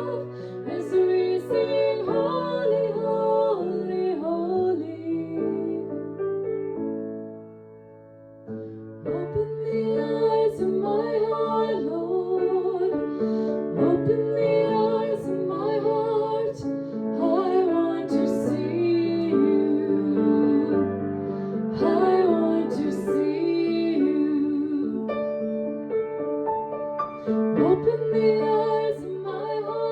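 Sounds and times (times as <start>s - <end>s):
woman singing worship song: 0.0s - 6.0s, 9.1s - 25.1s, 27.5s - 29.9s
keyboard accompaniment: 12.6s - 29.9s.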